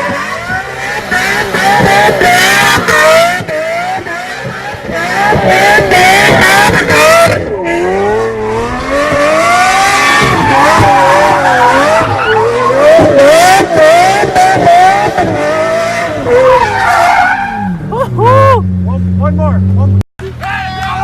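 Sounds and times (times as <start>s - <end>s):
car engine revving: 0.0s - 20.4s
tyres squealing: 9.8s - 13.2s.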